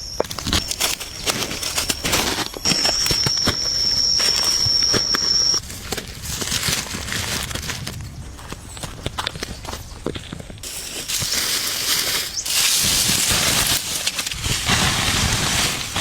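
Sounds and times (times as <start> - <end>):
high-pitched whine: 0.0 - 5.6.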